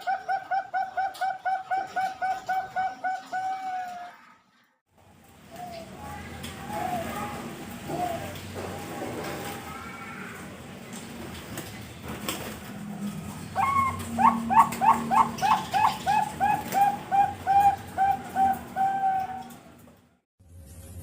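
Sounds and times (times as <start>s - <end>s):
dove cooing: 0.0s - 4.1s, 5.4s - 10.2s, 13.0s - 20.0s.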